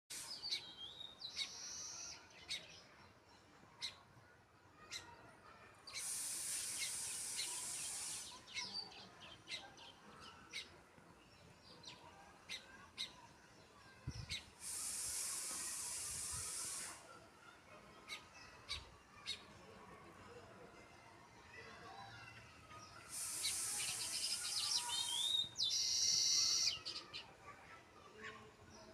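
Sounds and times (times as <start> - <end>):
sparrows chirping: 0.1 - 2.9, 5.9 - 10.7, 22.8 - 27.3
steady hiss: 5.9 - 8.6, 14.5 - 17.1, 23.1 - 25.4.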